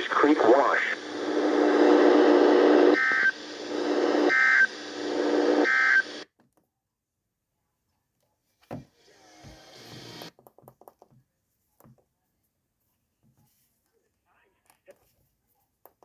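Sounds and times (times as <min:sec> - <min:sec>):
low hum: 0:00.0 - 0:06.2
warbling data bursts: 0:00.0 - 0:06.2.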